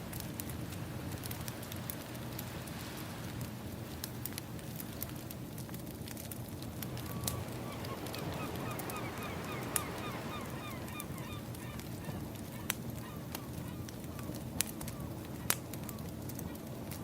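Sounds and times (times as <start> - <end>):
crackling wood fire: 0.0 - 17.0
bird calling in falling notes: 7.0 - 14.3.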